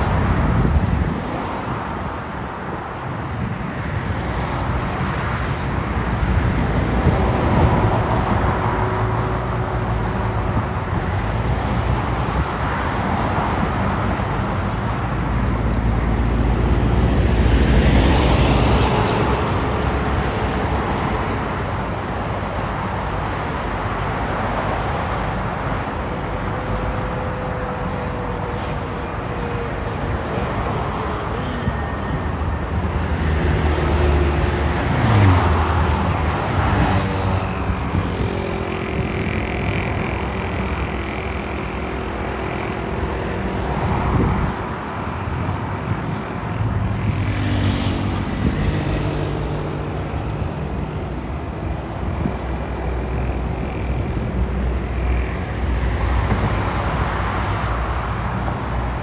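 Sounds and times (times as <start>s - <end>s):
road traffic passing: 0.0s - 59.0s
vehicle passing close: 32.8s - 42.2s.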